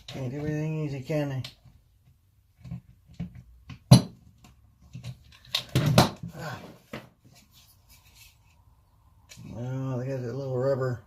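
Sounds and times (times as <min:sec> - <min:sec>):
plastic parts clicking and knocking: 0:01.4 - 0:06.3.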